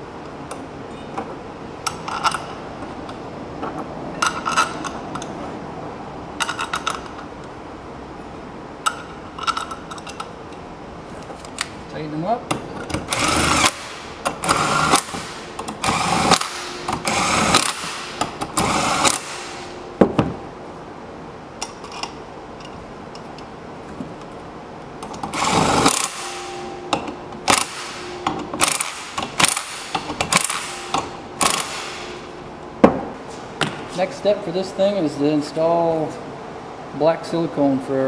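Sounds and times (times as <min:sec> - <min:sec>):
power driver tightening bolts: 0:12.6 - 0:19.6, 0:25.0 - 0:32.0.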